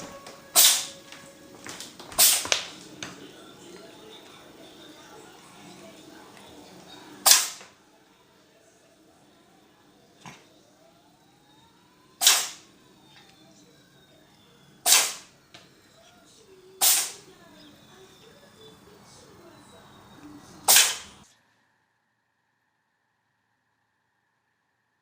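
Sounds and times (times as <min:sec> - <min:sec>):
cat sneezing: 0:00.5 - 0:01.0, 0:02.1 - 0:02.6, 0:07.2 - 0:07.6, 0:12.2 - 0:12.6, 0:14.8 - 0:15.3, 0:16.8 - 0:17.2, 0:20.7 - 0:21.2.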